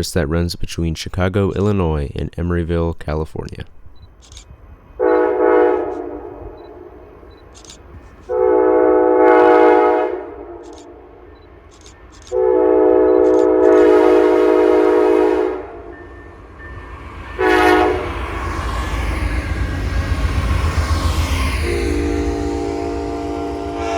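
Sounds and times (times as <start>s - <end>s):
train rumble: 0.0s - 23.9s
locomotive air horn blasts: 5.0s - 7.1s, 8.3s - 10.7s, 12.3s - 16.0s, 17.4s - 18.4s, 21.6s - 23.9s.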